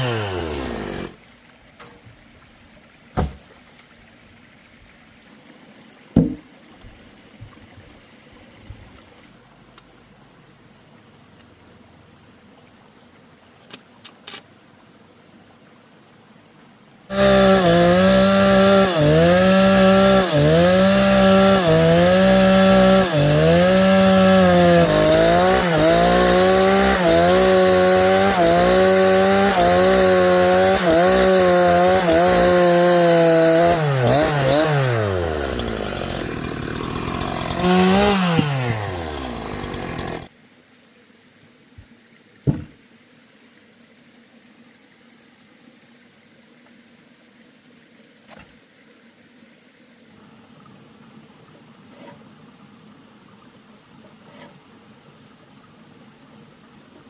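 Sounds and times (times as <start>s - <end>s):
chainsaw cutting a log: 0.0s - 1.2s, 17.1s - 40.3s
sharp wooden knocks: 6.2s - 6.5s, 42.5s - 42.8s.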